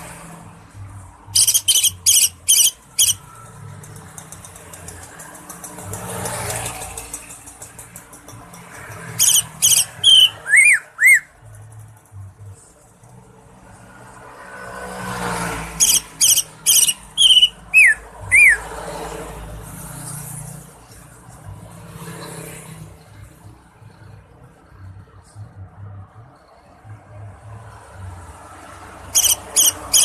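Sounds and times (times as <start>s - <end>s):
bird song with falling whistles: 9.2s - 11.3s, 15.9s - 18.6s.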